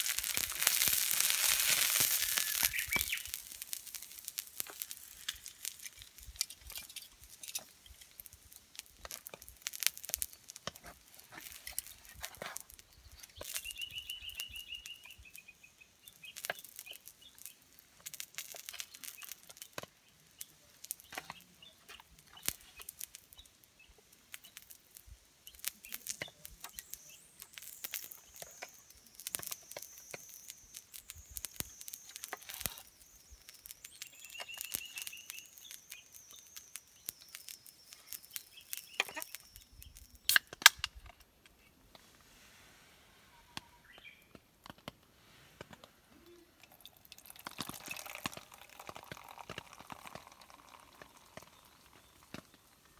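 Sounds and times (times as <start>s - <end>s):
wood fire crackling and popping: 0.0s - 42.1s, 43.6s - 52.9s
thin high whistle falling: 1.4s - 3.5s
bird trilling: 2.2s - 3.3s.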